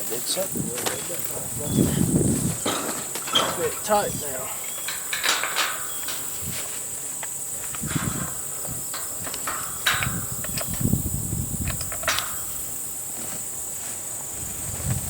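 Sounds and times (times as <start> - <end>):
high-pitched insect drone: 0.0 - 15.0
handling clicks and rustling: 2.4 - 11.0, 11.6 - 12.6.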